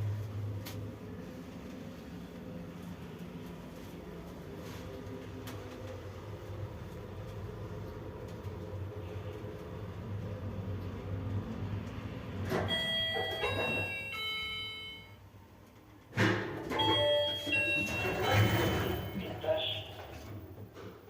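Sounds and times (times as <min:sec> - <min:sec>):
lift car hum: 0:00.0 - 0:21.0
electronic chime: 0:16.8 - 0:19.3.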